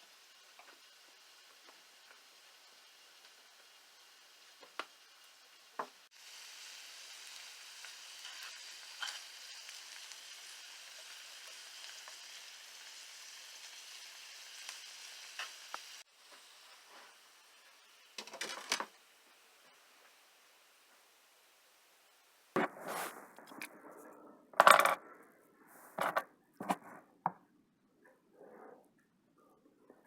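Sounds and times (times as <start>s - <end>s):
food sizzling in a frying pan: 0.0s - 23.1s.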